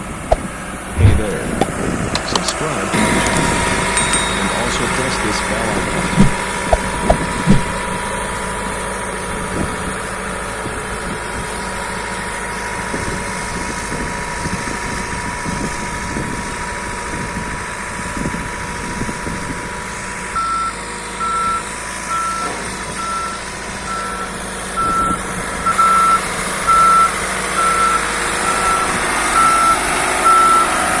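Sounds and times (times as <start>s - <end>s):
construction machine engine running: 0.0s - 31.0s
reversing alarm beeping: 20.4s - 30.8s.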